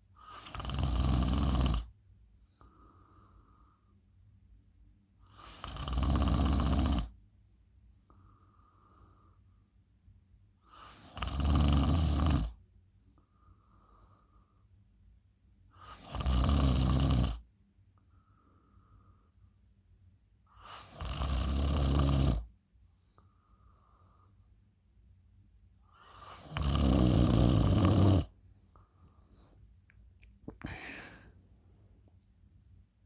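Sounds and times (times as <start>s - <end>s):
person snoring loudly: 0.5s - 1.9s, 5.6s - 7.1s, 21.0s - 22.4s, 26.3s - 28.3s
quiet breathing: 1.8s - 4.2s, 7.7s - 10.0s, 12.9s - 14.9s, 18.0s - 19.8s, 22.7s - 24.7s, 25.8s - 32.2s.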